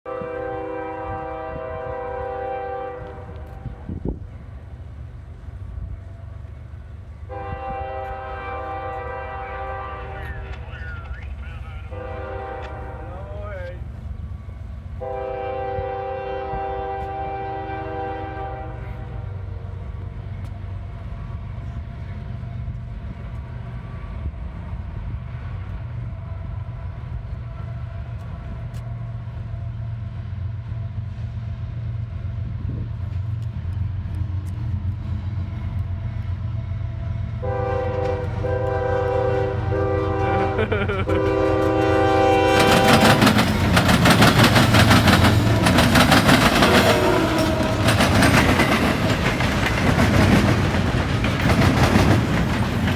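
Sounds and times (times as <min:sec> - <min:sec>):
locomotive horn: 0:00.0 - 0:04.2, 0:07.2 - 0:13.8, 0:15.0 - 0:19.6, 0:37.4 - 0:43.5, 0:45.0 - 0:48.8
diesel locomotive engine rumble: 0:00.1 - 0:52.9
wheels clattering on rails: 0:40.7 - 0:52.9.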